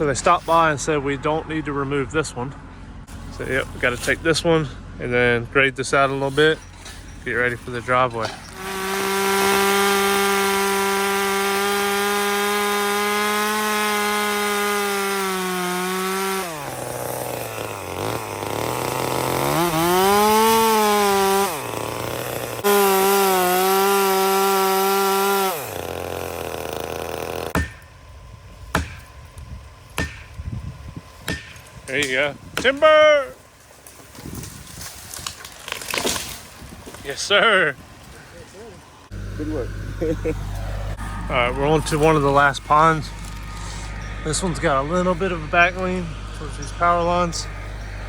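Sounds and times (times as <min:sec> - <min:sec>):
chainsaw cutting wood: 0:07.4 - 0:33.0, 0:33.8 - 0:37.1, 0:39.1 - 0:48.0
sharp knocks: 0:27.5 - 0:27.9, 0:28.7 - 0:29.1, 0:30.0 - 0:30.4, 0:31.3 - 0:31.7.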